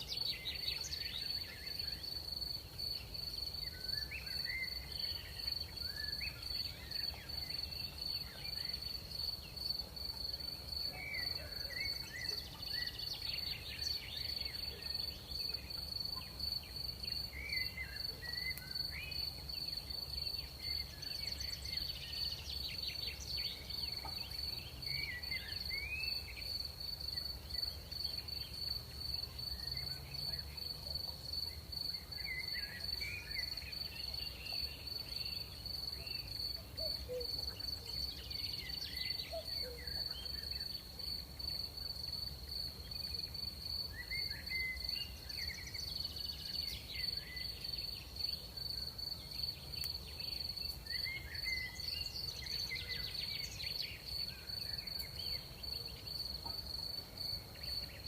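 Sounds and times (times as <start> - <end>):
crickets trilling: 0.0 - 58.0.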